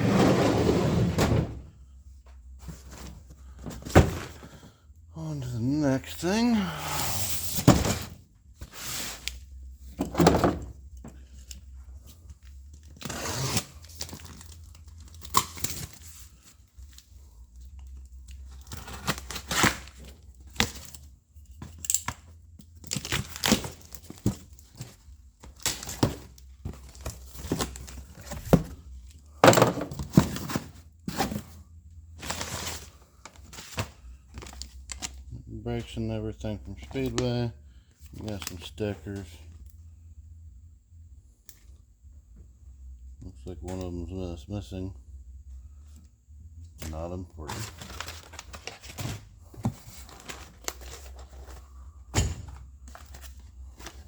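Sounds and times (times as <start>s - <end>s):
thunks of parts moved: 0.0s - 1.7s, 2.6s - 4.7s, 25.8s - 31.6s.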